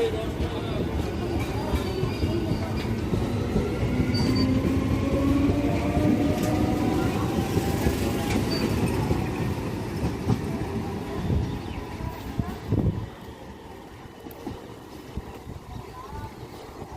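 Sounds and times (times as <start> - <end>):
train wheels rumbling on rail: 0.0 - 16.9.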